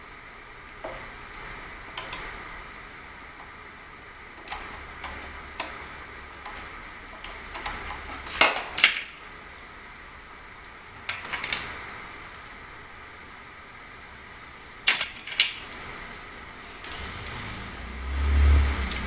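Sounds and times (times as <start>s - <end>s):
metal parts clinking: 8.3s - 9.3s, 14.9s - 15.8s.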